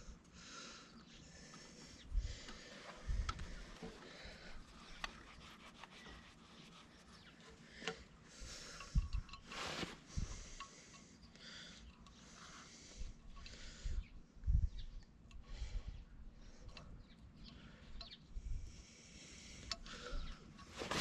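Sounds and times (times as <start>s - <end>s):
hand work on engine parts: 3.3s - 11.1s
scrape-like hiss: 9.4s - 10.4s.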